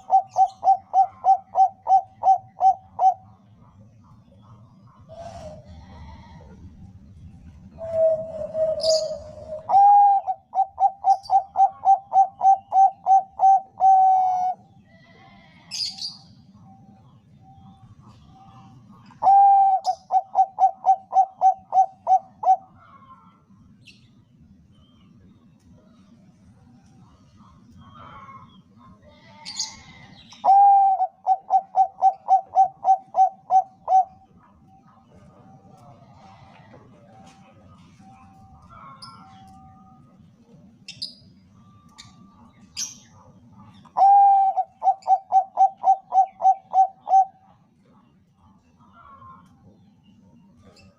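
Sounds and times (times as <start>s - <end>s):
dove cooing: 0.0s - 3.6s, 5.0s - 6.8s, 7.4s - 14.6s, 19.1s - 23.3s, 30.4s - 34.4s, 43.8s - 47.6s.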